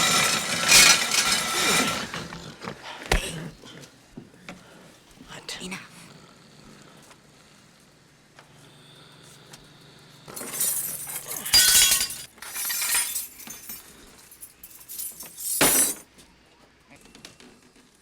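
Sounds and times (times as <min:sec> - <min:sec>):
loud crashing and breaking: 0:00.0 - 0:02.2.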